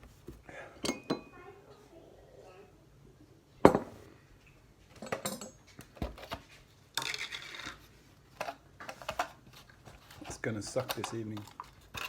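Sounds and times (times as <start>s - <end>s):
cutlery and dishes clinking: 0.8s - 1.3s, 5.0s - 5.7s.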